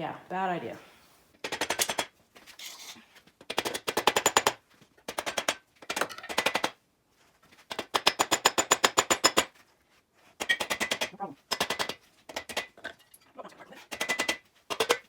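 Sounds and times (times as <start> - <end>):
impact wrench hammering: 7.9 - 9.5.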